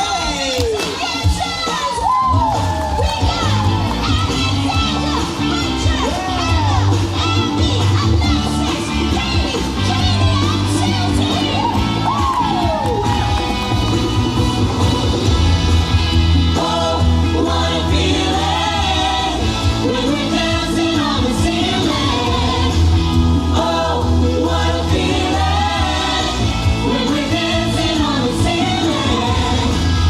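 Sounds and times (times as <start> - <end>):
pop music with singing: 0.0 - 30.0
steady bass line: 2.0 - 30.0.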